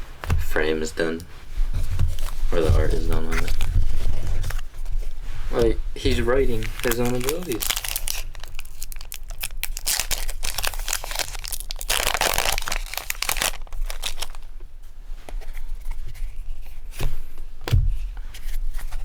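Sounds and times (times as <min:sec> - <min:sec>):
foil wrapper crinkling and tearing: 0:06.2 - 0:14.5.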